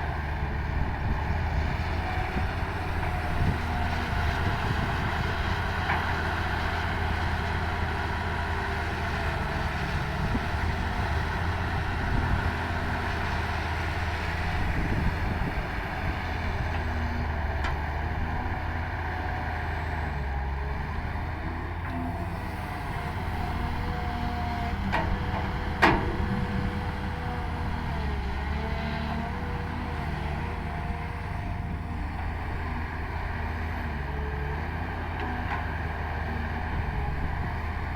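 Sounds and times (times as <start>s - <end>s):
excavator diesel engine running: 0.0s - 37.9s
excavator knocks: 24.8s - 27.3s.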